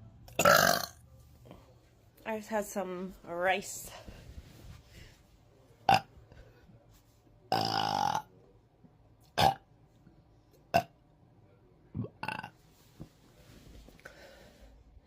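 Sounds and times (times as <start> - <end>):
woman burping: 0.4 - 1.0, 12.0 - 12.5.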